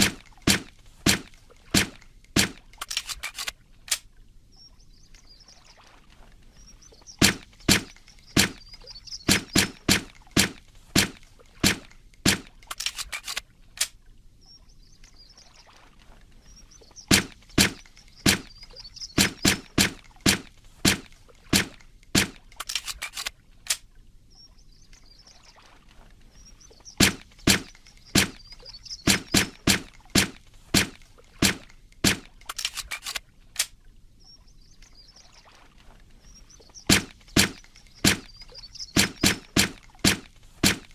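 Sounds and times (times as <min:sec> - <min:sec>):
light clicks: 0:06.8 - 0:14.0, 0:15.0 - 0:15.3, 0:16.8 - 0:23.8, 0:26.6 - 0:33.8.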